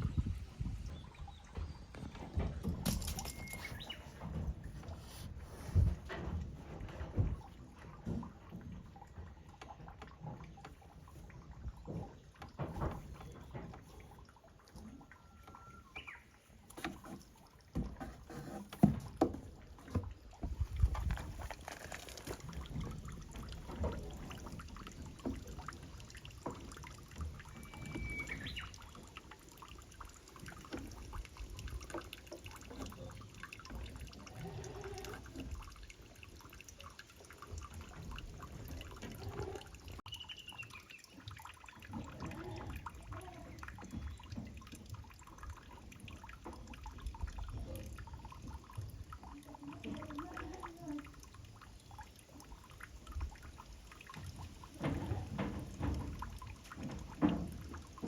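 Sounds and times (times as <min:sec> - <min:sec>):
wind buffeting microphone: 0:00.0 - 0:02.6.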